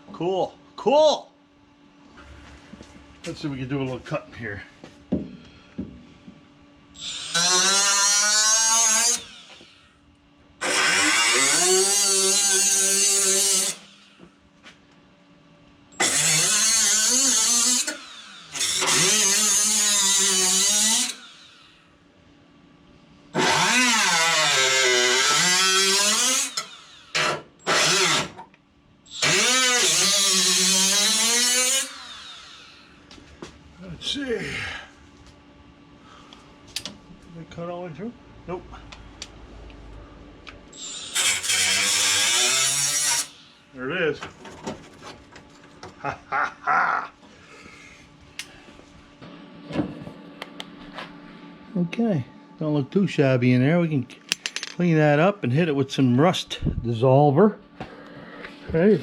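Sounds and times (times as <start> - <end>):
cut-off wheel cutting sheet metal: 7.0 - 9.4, 10.6 - 13.9, 16.0 - 21.6, 23.4 - 28.4, 29.1 - 32.7, 40.7 - 43.5.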